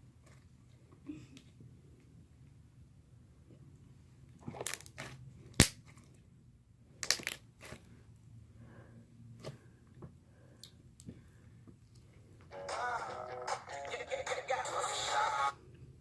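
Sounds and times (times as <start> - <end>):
slime crackling and popping: 4.5 - 5.8, 7.0 - 7.8
sharp crack: 5.6 - 5.8.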